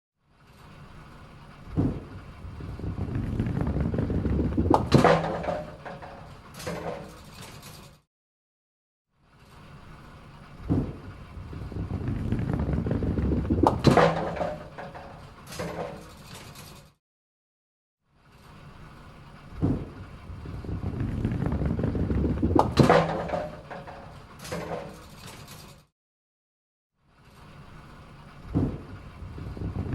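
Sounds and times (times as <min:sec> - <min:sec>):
bowling ball rolling rumble: 0:00.8 - 0:07.2, 0:09.9 - 0:16.1, 0:18.6 - 0:25.1, 0:27.6 - 0:29.9
bowling ball thud: 0:03.0 - 0:05.8, 0:12.2 - 0:14.7, 0:20.8 - 0:23.7.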